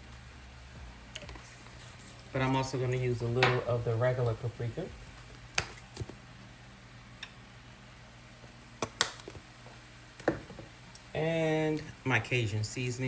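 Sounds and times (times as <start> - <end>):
spice containers clicking and tapping: 8.8 - 9.4.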